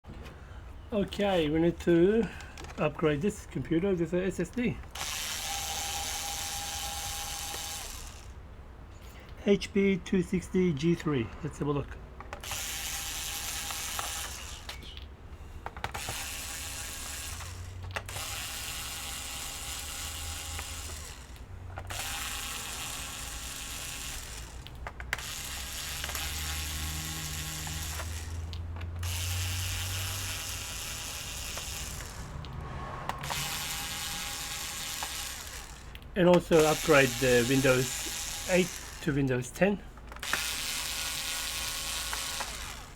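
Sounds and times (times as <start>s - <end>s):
electric screwdriver whirring: 4.8s - 8.4s, 12.2s - 39.3s, 40.0s - 42.9s.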